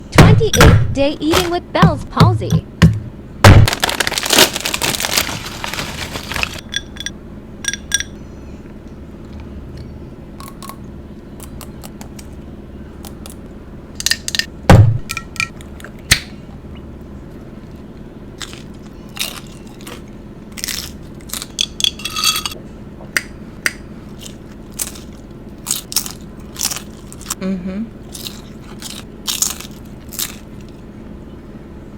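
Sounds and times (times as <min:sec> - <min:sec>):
loud low thump: 0:00.2 - 0:03.8, 0:14.7 - 0:15.1
eating crunches and chewing: 0:03.6 - 0:06.6, 0:10.4 - 0:12.4, 0:15.5 - 0:22.0, 0:24.0 - 0:27.4, 0:28.0 - 0:31.0.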